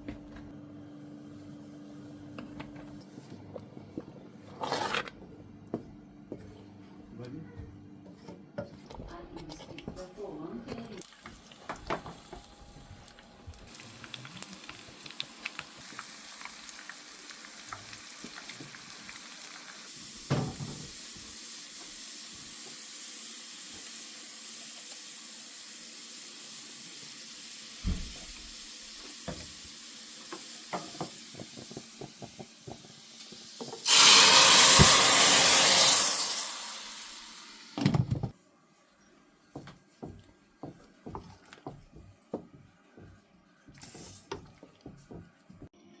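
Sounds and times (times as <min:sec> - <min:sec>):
food sizzling in a pan: 0:11.0 - 0:37.8.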